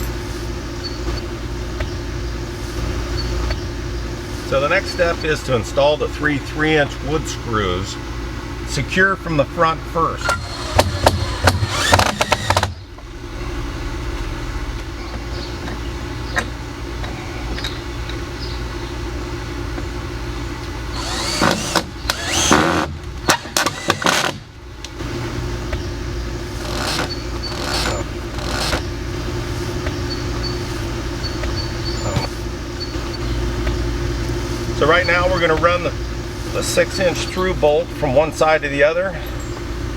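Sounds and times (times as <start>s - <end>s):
power drill driving screws: 2.6s - 2.9s, 4.2s - 5.0s, 10.2s - 12.8s, 20.9s - 24.5s, 26.4s - 31.0s, 36.3s - 37.4s
low hum: 9.4s - 18.9s, 20.9s - 38.4s.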